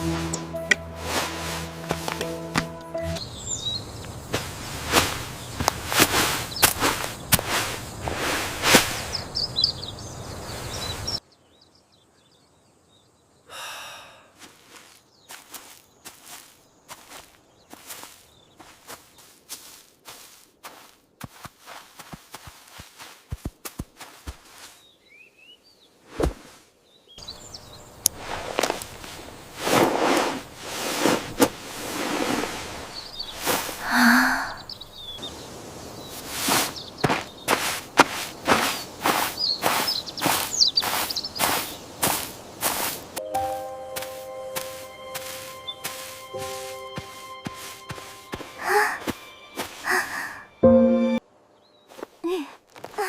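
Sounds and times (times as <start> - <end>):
rain-like hiss: 0.0 - 11.2, 26.2 - 50.4
birds chirping: 0.0 - 19.8, 24.5 - 26.0, 26.8 - 29.6, 30.9 - 52.4.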